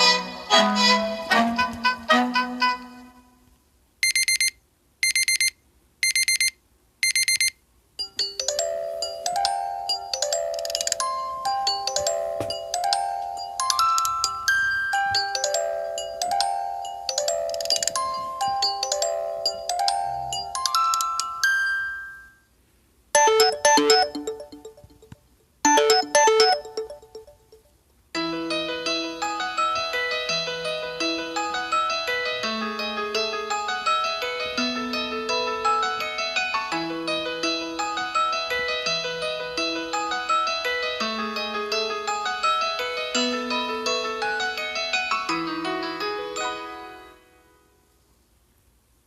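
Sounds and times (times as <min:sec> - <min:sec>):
alarm melody of ringing notes: 0:23.2 - 0:25.1, 0:25.7 - 0:27.7
rapid high electronic beeping: 0:23.2 - 0:25.1, 0:25.7 - 0:27.6.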